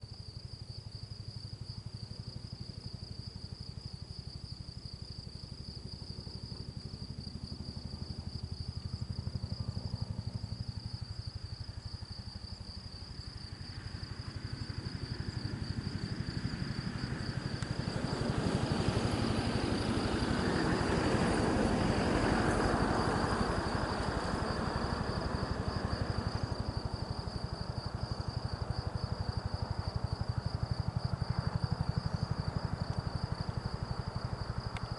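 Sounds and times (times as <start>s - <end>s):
helicopter rotor beating: 12.7s - 34.7s.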